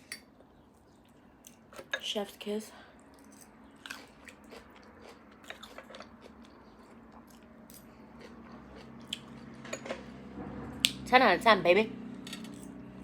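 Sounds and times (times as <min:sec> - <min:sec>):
person chewing: 0:03.0 - 0:09.6.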